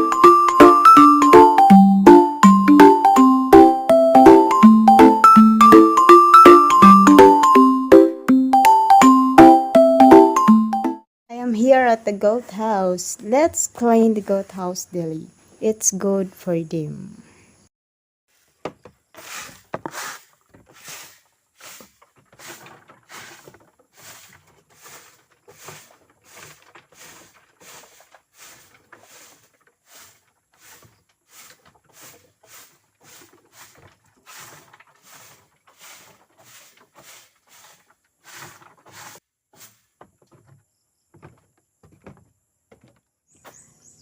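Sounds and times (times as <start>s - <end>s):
broom sweeping floor: 18.3s - 40.5s.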